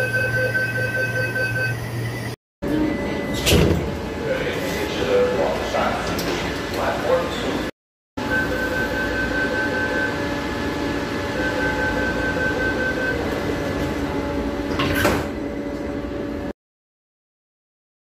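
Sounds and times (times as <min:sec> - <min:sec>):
sliding doors closing: 0:02.7 - 0:07.6, 0:10.0 - 0:16.2.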